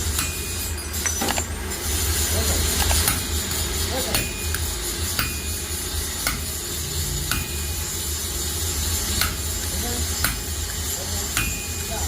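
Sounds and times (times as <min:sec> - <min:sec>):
low rumble and hiss of machinery: 0:00.0 - 0:12.0.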